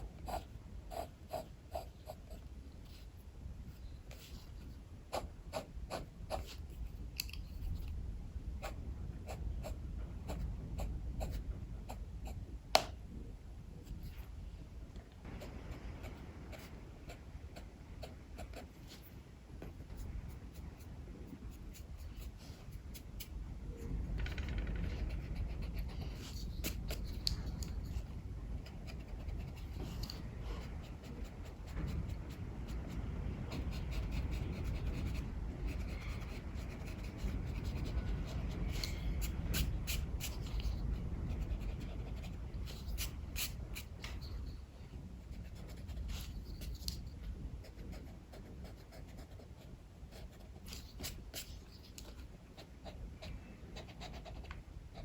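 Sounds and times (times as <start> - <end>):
strong wind rumble: 0.0 - 55.0.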